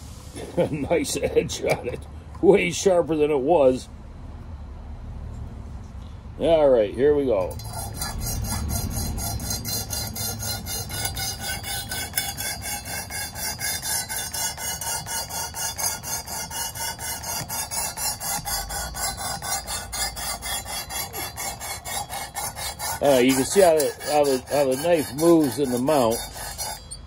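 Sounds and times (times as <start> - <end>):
sharpening stone rasping on knife: 7.4 - 27.0.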